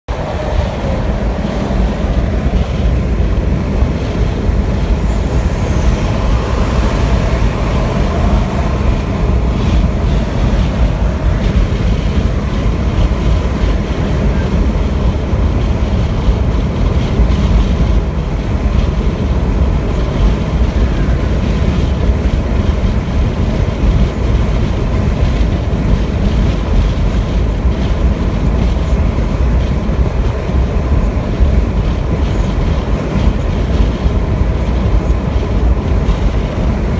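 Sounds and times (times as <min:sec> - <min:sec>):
vehicle road and wind noise: 0:00.0 - 0:36.9.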